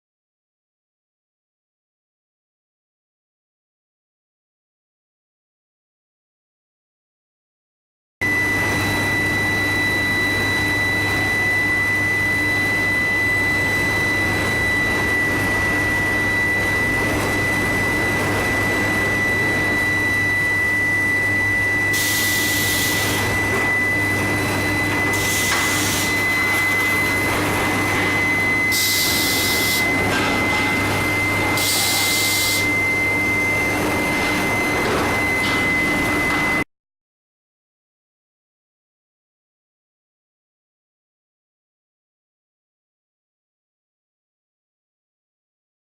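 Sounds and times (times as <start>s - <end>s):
electrical hum: 8.2s - 36.6s
high-pitched induction whine: 8.2s - 36.7s.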